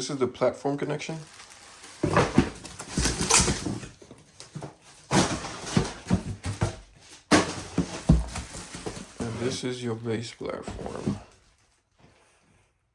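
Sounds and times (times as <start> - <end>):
packaging rustling: 1.1 - 9.6
parts clattering: 1.9 - 9.7.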